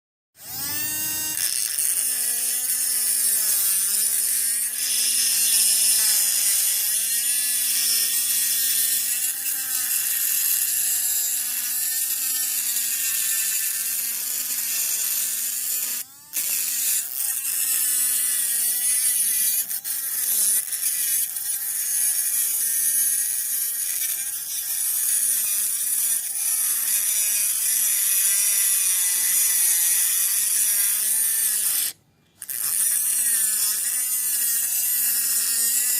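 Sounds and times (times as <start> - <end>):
small motor whining: 0.4 - 35.9.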